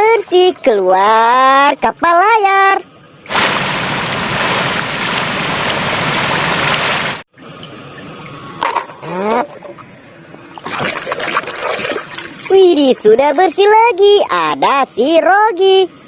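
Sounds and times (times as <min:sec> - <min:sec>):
water spraying hard: 0:03.3 - 0:07.3
water trickling: 0:09.2 - 0:13.8.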